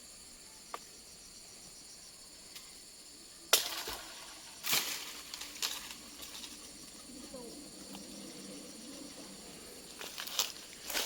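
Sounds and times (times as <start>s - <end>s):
insects chirring: 0.0s - 11.0s
rustling: 9.9s - 11.0s.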